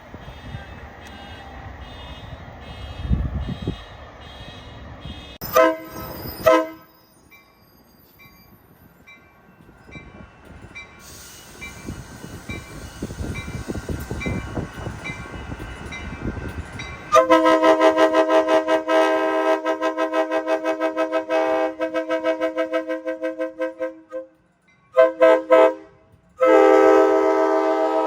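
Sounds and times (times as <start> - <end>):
rumble of approaching train: 0.0 - 28.0
train horn blasts: 0.2 - 7.0, 17.1 - 28.0.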